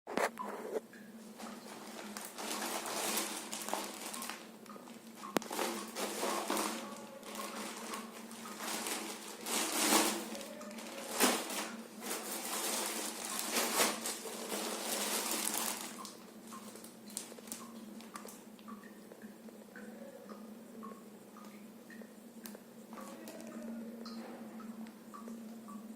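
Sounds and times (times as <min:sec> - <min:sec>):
faint steady hum: 0:00.1 - 0:25.9
plastic packaging crinkling: 0:01.4 - 0:18.4.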